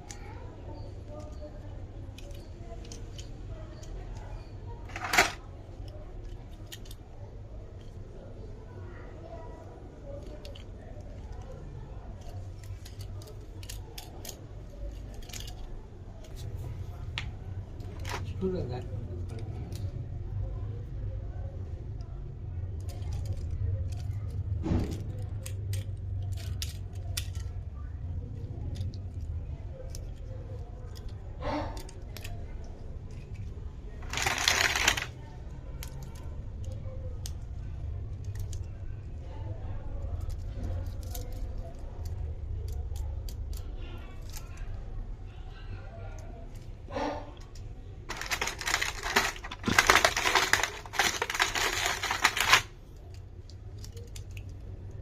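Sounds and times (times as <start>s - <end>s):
plastic toys clicking and rattling: 0.0s - 8.4s, 9.6s - 20.4s, 22.0s - 45.0s, 47.4s - 55.0s
packaging rustling scrape: 4.9s - 5.4s, 34.0s - 35.1s, 48.1s - 52.7s.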